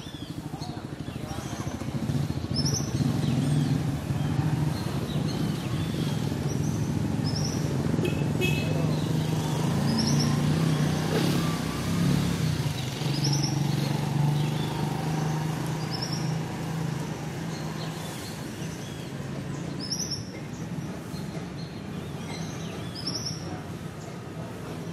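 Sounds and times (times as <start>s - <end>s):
bird chirping: 0.0s - 8.2s, 8.9s - 11.1s, 11.7s - 24.1s
vehicle engine humming: 0.0s - 24.9s.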